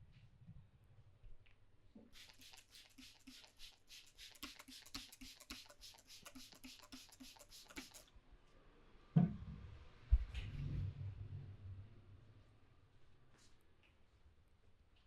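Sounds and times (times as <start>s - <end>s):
hands rubbing hair: 2.1s - 8.1s.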